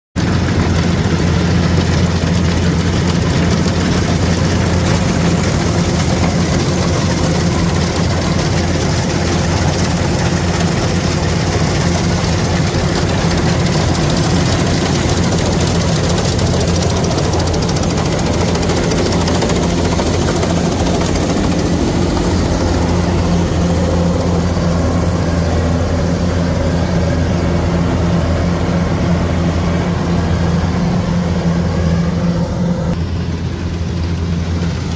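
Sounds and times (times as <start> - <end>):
combine harvester engine droning: 0.2 - 34.9.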